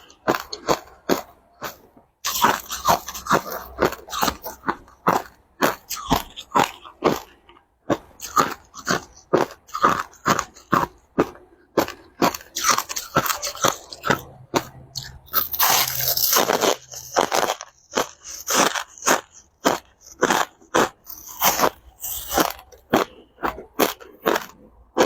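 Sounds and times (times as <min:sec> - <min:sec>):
chewing crushed ice: 0:00.0 - 0:25.0.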